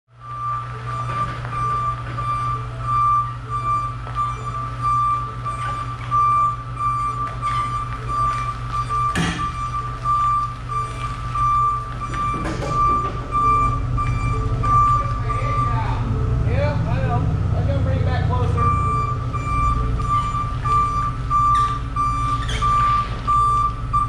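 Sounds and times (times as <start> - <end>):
engine humming: 0.1 - 24.0
vehicle backup alarm beeping: 0.1 - 24.0.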